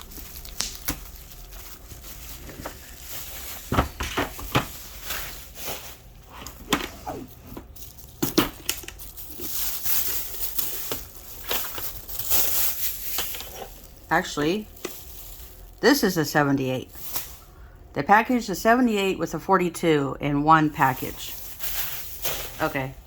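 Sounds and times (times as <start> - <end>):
plastic packaging crinkling and tearing: 0.0 - 15.9, 21.0 - 22.9.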